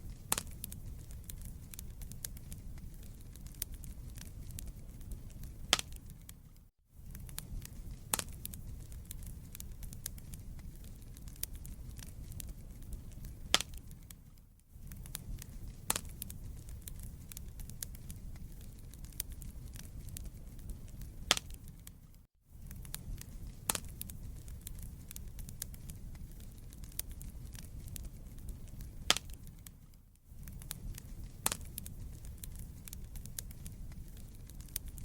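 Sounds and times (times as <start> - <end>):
fire crackling in a fireplace: 0.0 - 35.0
logs popping: 0.1 - 6.4, 7.1 - 14.2, 14.8 - 22.0, 22.6 - 29.8, 30.4 - 35.0.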